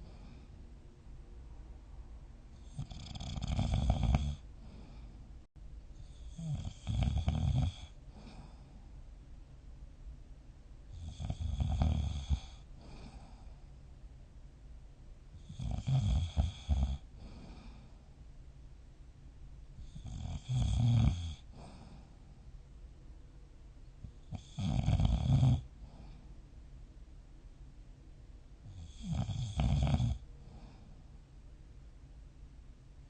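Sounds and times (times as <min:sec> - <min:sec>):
quiet breathing: 0:00.0 - 0:09.4, 0:10.8 - 0:14.4, 0:15.3 - 0:18.6, 0:19.4 - 0:22.9, 0:23.8 - 0:26.8, 0:28.5 - 0:31.6
person snoring: 0:02.6 - 0:05.0, 0:06.0 - 0:08.6, 0:11.0 - 0:13.5, 0:15.4 - 0:17.8, 0:19.8 - 0:22.1, 0:24.3 - 0:26.2, 0:28.7 - 0:30.8.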